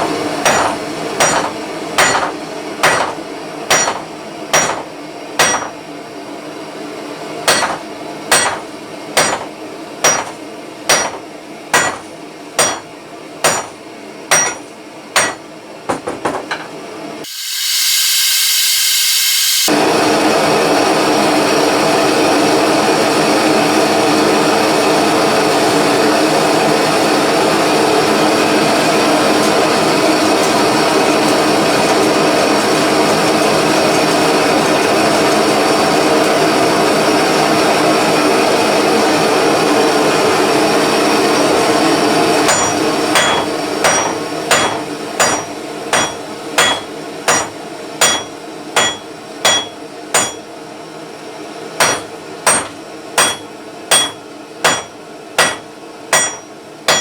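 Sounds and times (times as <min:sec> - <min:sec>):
hammer striking hot metal bar: 0:00.4 - 0:05.8, 0:07.5 - 0:15.4, 0:42.5 - 0:50.5, 0:51.8 - 0:57.0
blow lamp roaring: 0:17.2 - 0:43.9.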